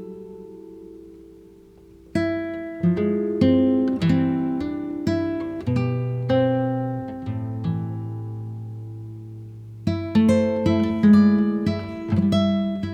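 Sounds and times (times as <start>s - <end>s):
acoustic guitar chords: 0.0s - 12.9s.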